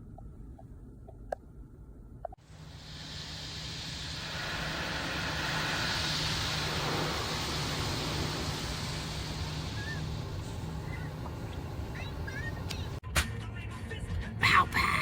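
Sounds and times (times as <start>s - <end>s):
car cabin road and engine noise: 9.8s - 13.0s.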